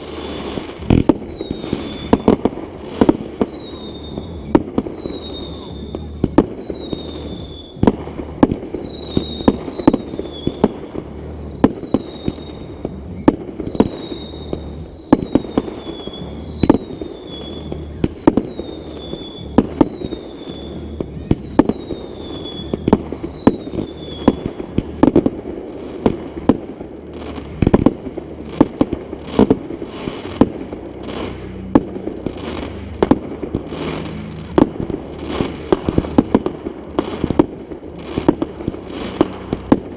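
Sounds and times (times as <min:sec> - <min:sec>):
fireworks bangs and crackling: 0:00.0 - 0:39.9
high falling whistle: 0:00.6 - 0:24.4.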